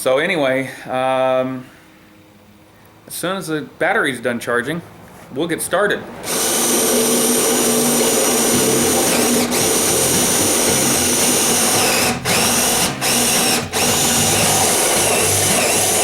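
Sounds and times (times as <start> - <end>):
electric drill boring wood: 6.2 - 16.0.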